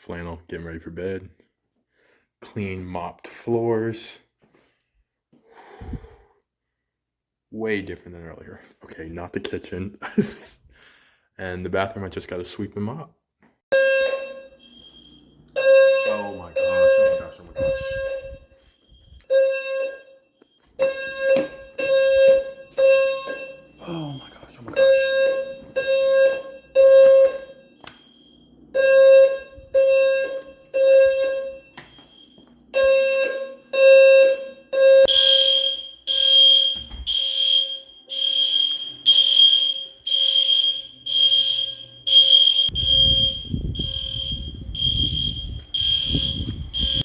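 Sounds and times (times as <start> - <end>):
fire alarm horn beeps: 13.7 - 47.0
high-pitched beeping: 35.0 - 47.0.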